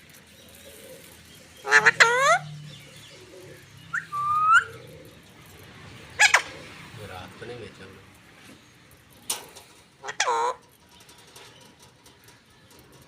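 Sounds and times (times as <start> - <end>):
parrot calling: 1.6 - 2.5, 3.9 - 4.9, 6.2 - 6.7, 10.0 - 10.6.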